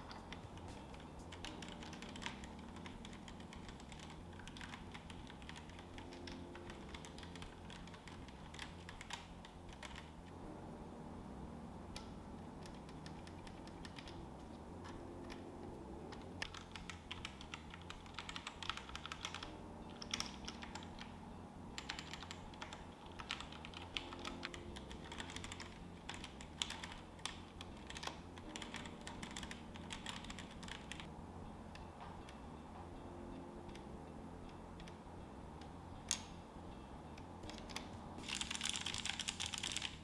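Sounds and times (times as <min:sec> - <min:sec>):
mechanical keyboard typing: 0:00.0 - 0:10.3, 0:11.9 - 0:21.2, 0:21.8 - 0:31.1, 0:37.4 - 0:40.0
steady low hum: 0:00.0 - 0:40.0.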